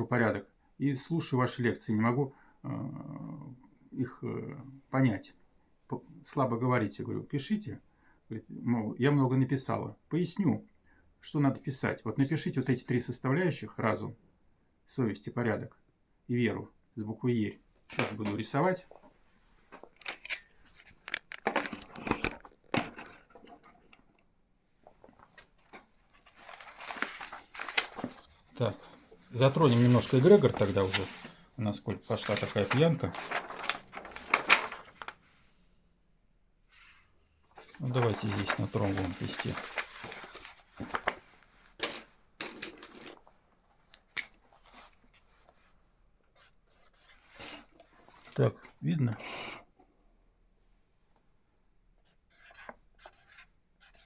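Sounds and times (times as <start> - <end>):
paper rustling and crinkling: 19.7 - 23.9, 24.8 - 35.4, 37.5 - 45.7.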